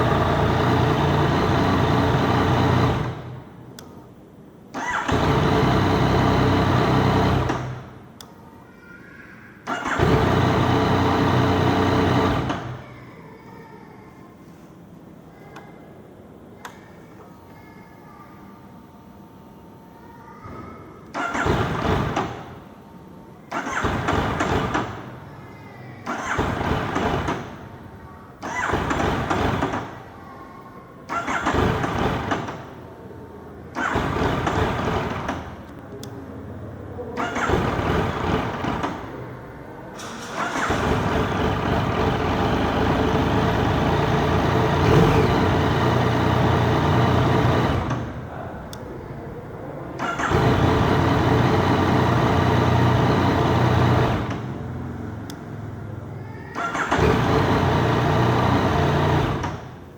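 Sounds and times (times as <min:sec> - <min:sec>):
motorcycle starter cranking engine: 0:00.0 - 0:03.5, 0:04.7 - 0:08.0, 0:09.6 - 0:12.9, 0:21.1 - 0:22.6, 0:23.5 - 0:25.2, 0:26.0 - 0:27.7, 0:28.4 - 0:30.1, 0:31.1 - 0:32.8, 0:33.7 - 0:35.8, 0:37.2 - 0:48.8, 0:50.0 - 0:59.9.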